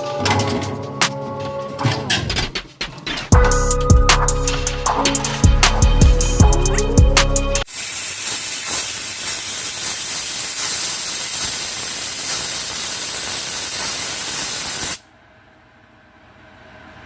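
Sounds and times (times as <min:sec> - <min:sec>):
steamer hissing: 0:07.6 - 0:15.0.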